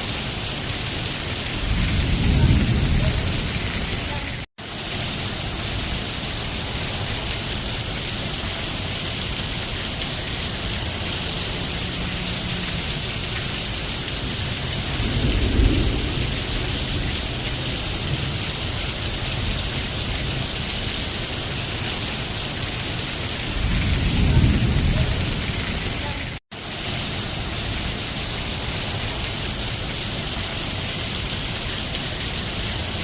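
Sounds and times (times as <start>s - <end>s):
steady rain falling: 0.0s - 33.0s
low rumble of thunder: 1.4s - 4.5s, 13.6s - 20.6s, 23.5s - 26.0s.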